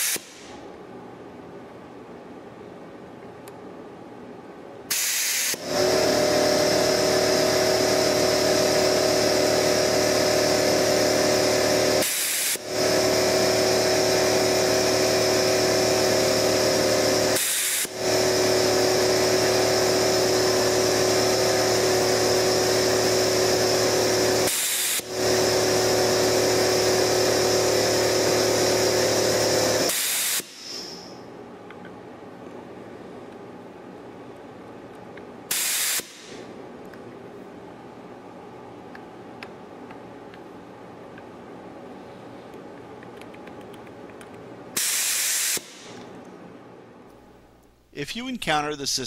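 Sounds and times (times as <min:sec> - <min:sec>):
burst of air: 0:04.9 - 0:05.7, 0:35.5 - 0:36.4, 0:44.8 - 0:46.0
vacuum desoldering gun hissing: 0:04.9 - 0:31.0.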